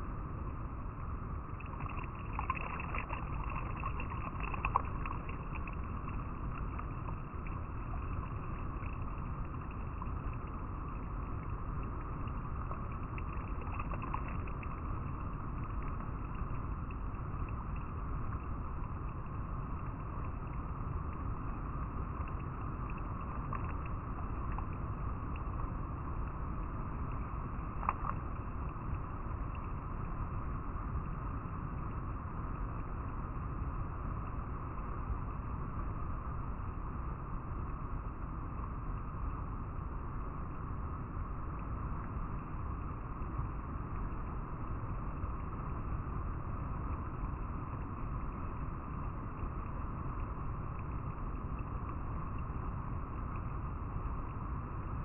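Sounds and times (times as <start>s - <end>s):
river water flowing over rocks: 0.0s - 31.0s, 33.8s - 55.0s
small water splashes: 1.4s - 29.5s.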